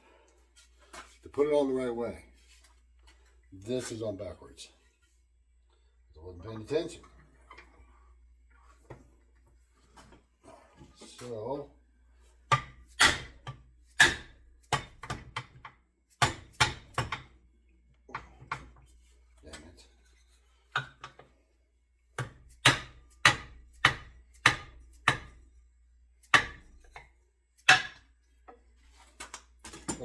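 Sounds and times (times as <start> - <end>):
wooden knocks of axe head: 27.7 - 28.0.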